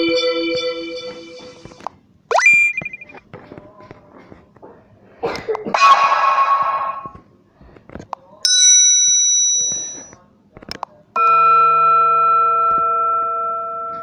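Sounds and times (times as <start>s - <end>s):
buzzy notification tone: 0.0s - 3.2s
bright bell-like chime: 8.8s - 10.1s.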